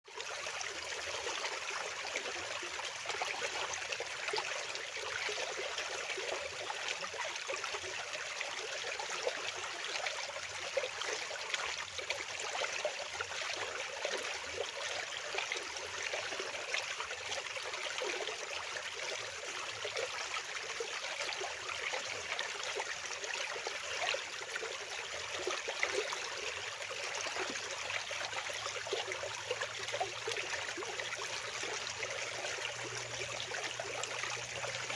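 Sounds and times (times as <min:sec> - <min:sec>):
fast-flowing water rushing: 0:14.4 - 0:34.9.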